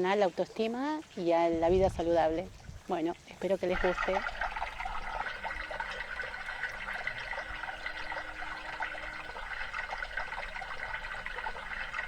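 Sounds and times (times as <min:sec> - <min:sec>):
small waterfall splashing into pond: 0:02.6 - 0:12.0.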